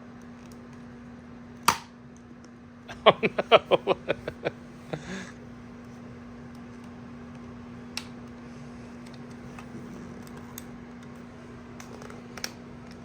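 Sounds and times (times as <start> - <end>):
steady low hum: 2.9 - 6.4.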